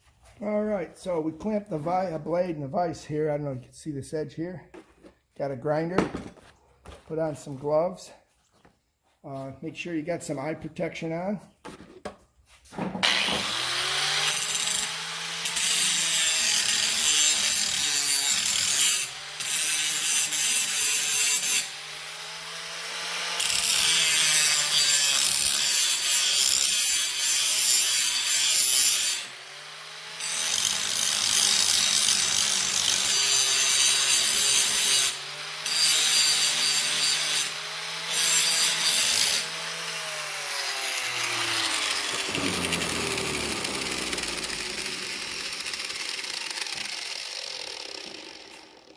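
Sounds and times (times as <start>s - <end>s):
grinding on steel: 13.1s - 21.8s, 40.9s - 48.9s
angle grinder motor whine: 40.2s - 48.9s.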